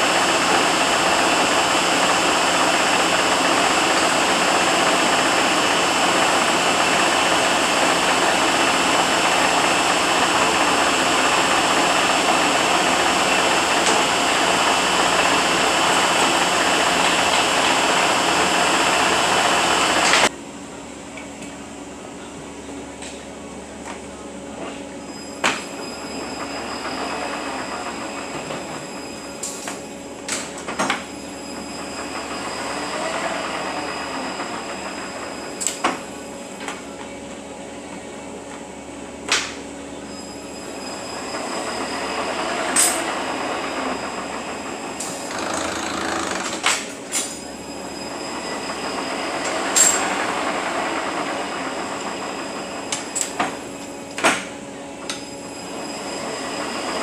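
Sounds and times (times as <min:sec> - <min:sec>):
transmission gear whine: 0:00.0 - 0:20.4, 0:39.8 - 0:57.0.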